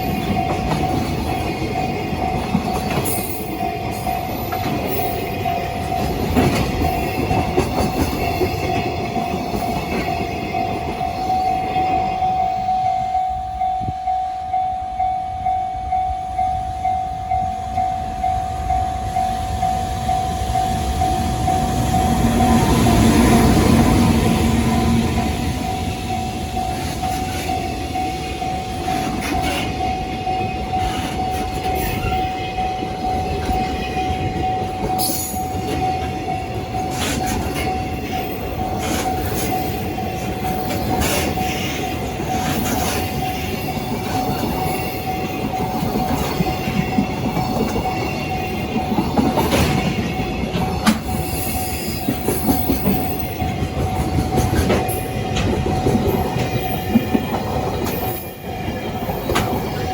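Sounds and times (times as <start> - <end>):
wheels clicking over rail joints: 0.0 - 12.4, 21.2 - 59.9
freight train wagons rumbling: 0.0 - 59.9
steady high tone: 0.0 - 59.9.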